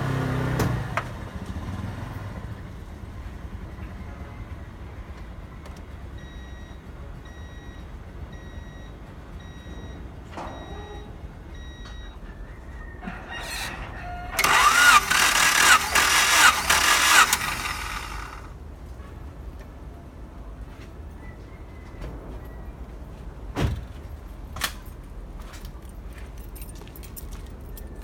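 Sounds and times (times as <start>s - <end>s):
faint short beeps: 8.4s - 12.3s
starter motor cranking engine: 13.4s - 18.5s.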